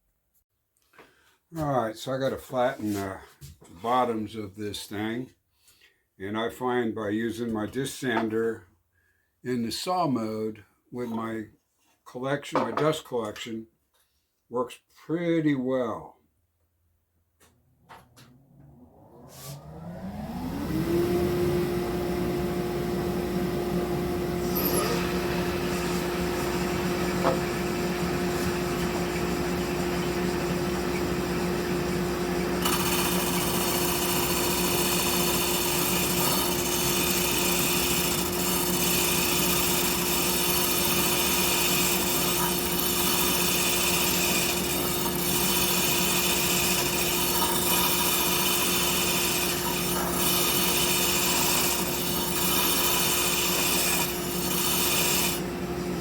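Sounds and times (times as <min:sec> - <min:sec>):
sander motor whine: 0:18.0 - 0:38.4
wood sanding rasp: 0:24.8 - 0:55.4.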